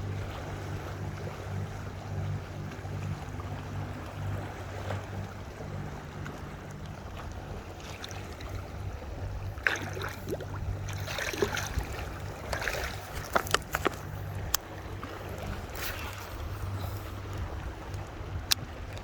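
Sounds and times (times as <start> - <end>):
low motor hum: 0.0 - 19.0
splashing: 0.0 - 19.0.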